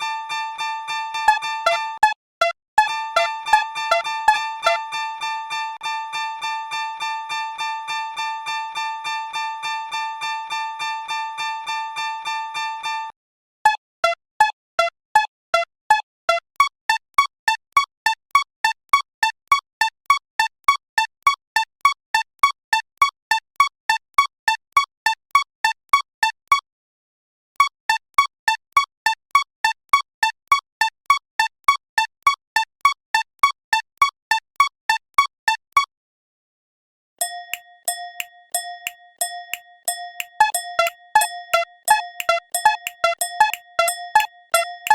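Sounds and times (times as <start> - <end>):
fast pulsing ringing chime: 37.2 - 44.9
single electronic dings: 37.2 - 44.9.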